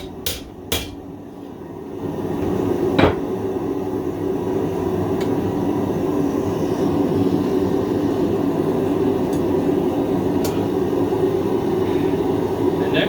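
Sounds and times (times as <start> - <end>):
hammer striking steel on anvil: 0.0 - 1.0.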